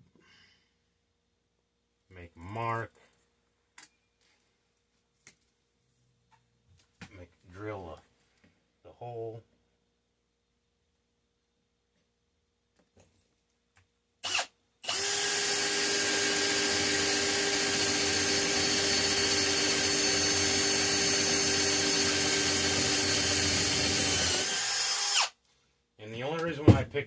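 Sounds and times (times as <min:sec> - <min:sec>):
electric drill boring metal: 0:14.2 - 0:25.4.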